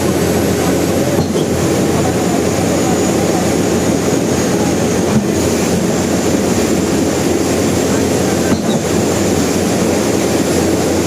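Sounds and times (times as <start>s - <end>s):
concrete pump rumbling: 0.0s - 11.0s.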